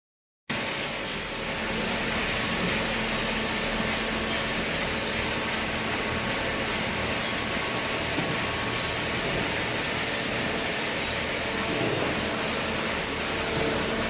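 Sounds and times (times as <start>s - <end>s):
baler motor and pump hum: 0.5s - 14.0s.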